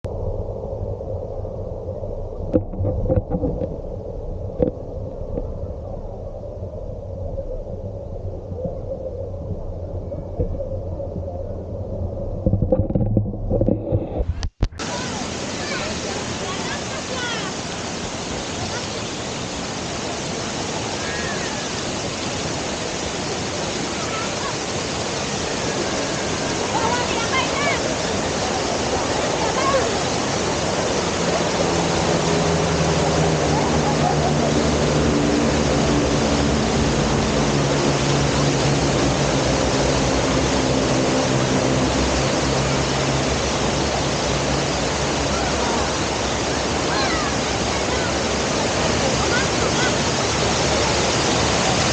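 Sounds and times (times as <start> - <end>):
low steady hum: 0.0 - 15.0
waterfall roaring: 14.7 - 51.9.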